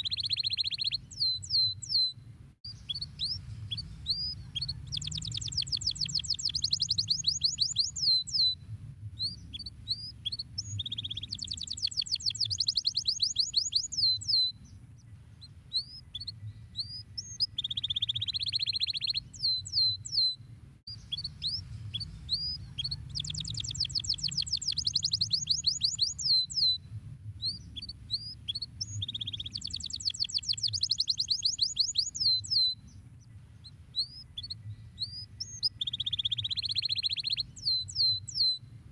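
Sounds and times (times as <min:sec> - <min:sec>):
canary singing trills: 0:00.0 - 0:08.6, 0:09.2 - 0:26.8, 0:27.4 - 0:38.7
steady low hum: 0:01.8 - 0:11.6, 0:20.3 - 0:25.6.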